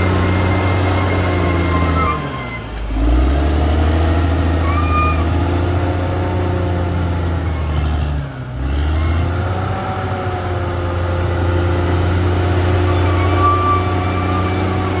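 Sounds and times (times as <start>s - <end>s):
high squeal: 0.0s - 3.0s, 4.6s - 5.5s, 12.3s - 15.0s
bulldozer diesel engine revving: 0.0s - 15.0s.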